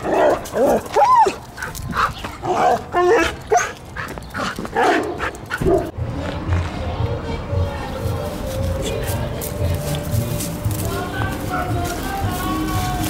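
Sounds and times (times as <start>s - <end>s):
dog-like barks and yips: 4.8s - 5.9s.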